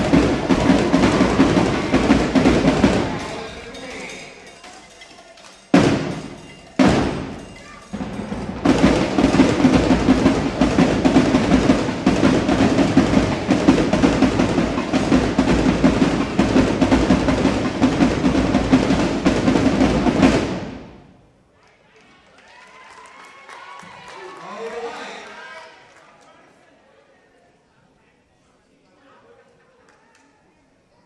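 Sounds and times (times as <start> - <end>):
fast marching drum cadence: 0.0 - 4.3, 5.6 - 21.0
heavy drum hits ringing: 0.0 - 4.4, 5.7 - 21.0.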